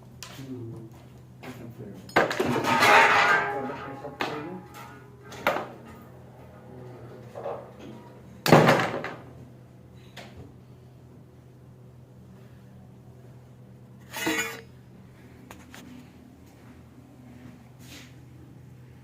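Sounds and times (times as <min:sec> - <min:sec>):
steady low hum: 0:00.0 - 0:19.0
metal tools clanking: 0:02.1 - 0:06.6, 0:14.1 - 0:14.6.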